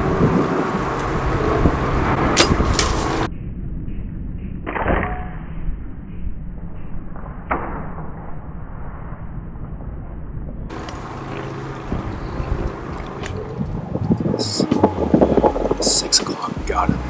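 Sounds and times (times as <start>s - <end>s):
bow shot thump: 2.4s - 3.3s.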